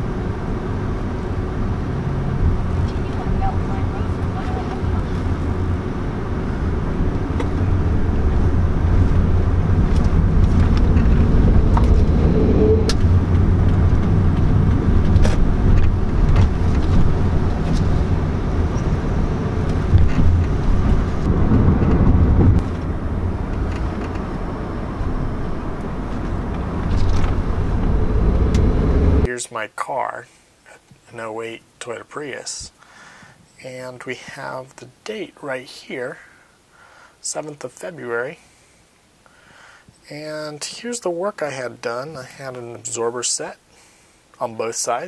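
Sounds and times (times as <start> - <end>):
road and tyre rumble: 0.0 - 29.3
suspension knocks: 7.3 - 29.3.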